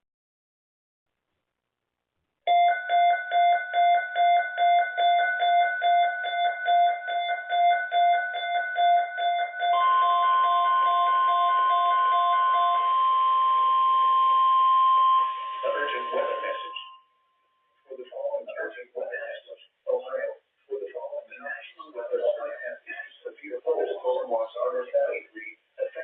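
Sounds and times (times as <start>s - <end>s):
rapid electronic alert beeping: 2.5s - 17.0s
steady warning alarm tone: 2.5s - 17.8s.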